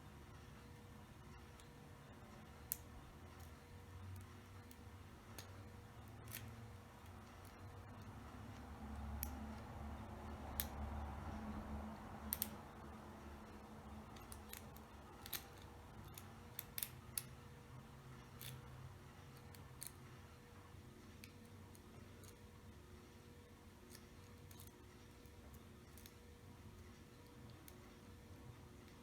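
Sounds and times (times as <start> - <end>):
lock pick metallic clicks: 12.3 - 12.6, 14.1 - 17.4.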